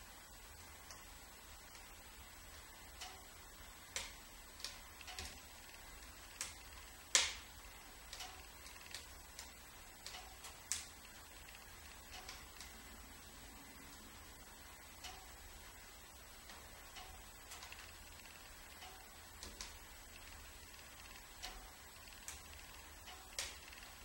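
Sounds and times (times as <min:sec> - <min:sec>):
wood fire crackling: 0:00.0 - 0:24.0
logs popping: 0:03.0 - 0:12.8.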